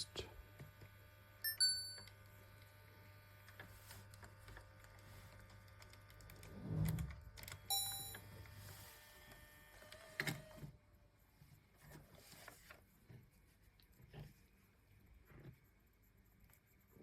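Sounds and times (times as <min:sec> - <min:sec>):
short electronic beep: 0:07.7 - 0:08.2.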